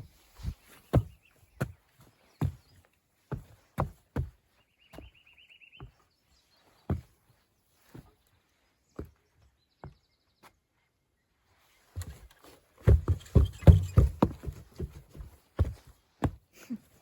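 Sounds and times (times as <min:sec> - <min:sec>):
dull thumps: 0:12.0 - 0:16.4.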